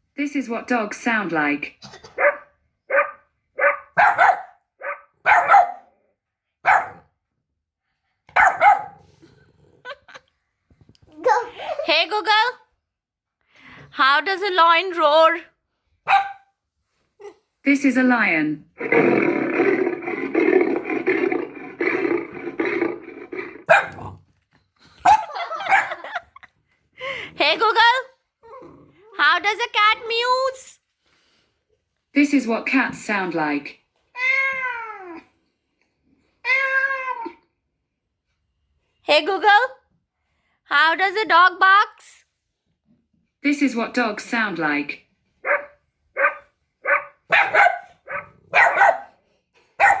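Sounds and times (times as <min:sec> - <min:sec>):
dog barking: 0:02.1 - 0:05.9, 0:06.6 - 0:07.1, 0:08.3 - 0:09.1, 0:16.0 - 0:16.5, 0:23.7 - 0:24.1, 0:25.0 - 0:26.2, 0:45.4 - 0:49.2, 0:49.8 - 0:50.0
recorded lion roar: 0:18.8 - 0:24.3.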